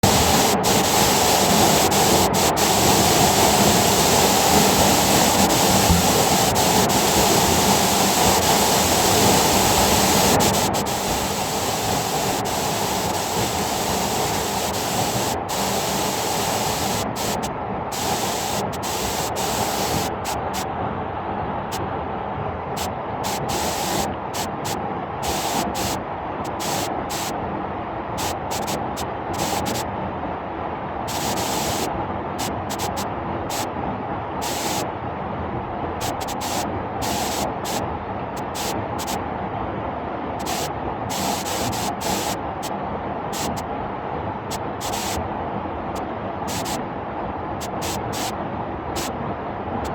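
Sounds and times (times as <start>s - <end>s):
waterfall roaring: 0.0s - 20.6s, 40.4s - 42.7s.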